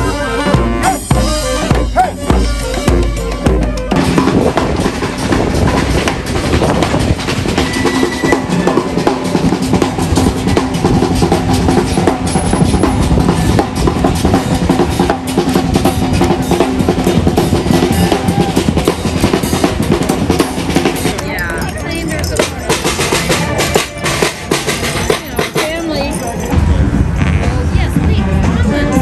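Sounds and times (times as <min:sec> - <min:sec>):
held low brass notes: 0:00.0 - 0:21.2
snare and bass drums beat: 0:00.0 - 0:26.5.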